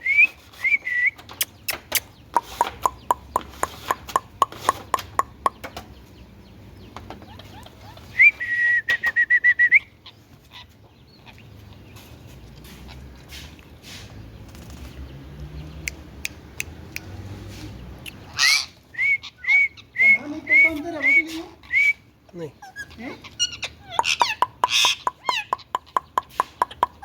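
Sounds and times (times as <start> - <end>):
parrot loud call: 18.3 - 20.1
parrot whistling: 18.4 - 22.0.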